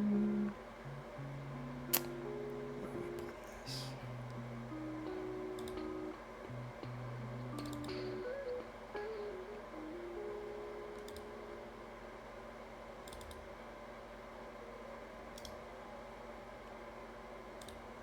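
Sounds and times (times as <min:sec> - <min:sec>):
faint background hum: 0:00.0 - 0:18.0
computer mouse clicks: 0:07.6 - 0:07.9, 0:11.0 - 0:11.3, 0:13.0 - 0:13.5, 0:15.4 - 0:15.6, 0:17.6 - 0:17.8.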